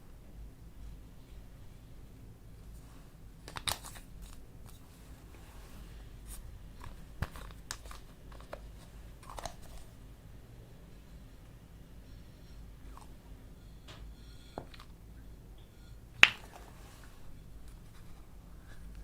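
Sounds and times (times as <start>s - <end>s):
crinkling handling noises: 2.6s - 10.1s.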